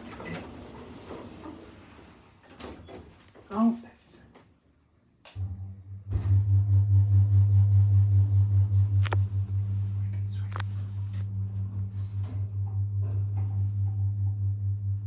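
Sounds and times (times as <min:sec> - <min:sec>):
lift drive humming: 0:05.4 - 0:15.0.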